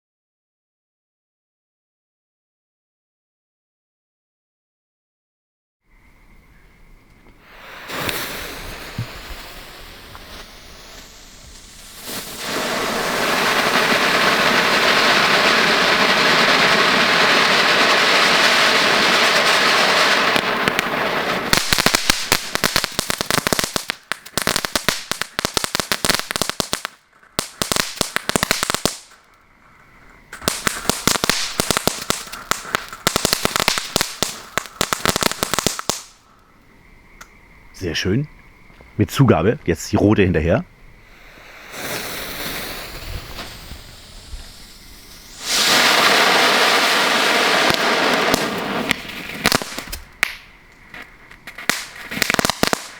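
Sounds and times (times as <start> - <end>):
crackling strobe pops: 7.3 - 29.4, 30.3 - 36.2, 41.3 - 52.9
firework fountain hissing: 7.4 - 29.2, 30.2 - 36.3, 40.9 - 52.9.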